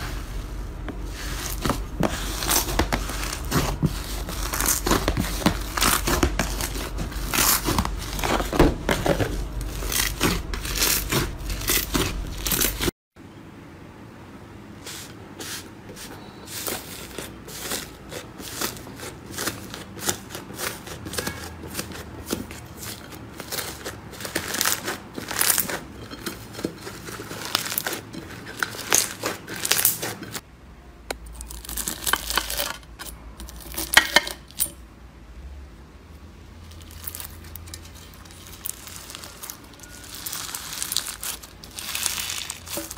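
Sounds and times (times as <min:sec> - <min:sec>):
slime crackling and popping: 0:00.9 - 0:12.9, 0:16.6 - 0:25.8, 0:26.6 - 0:30.1, 0:36.8 - 0:42.9.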